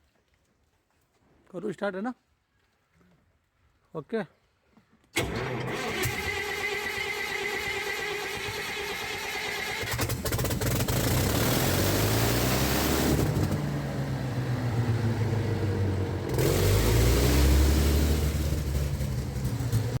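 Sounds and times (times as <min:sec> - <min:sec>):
diesel generator engine running: 0:05.2 - 0:20.0.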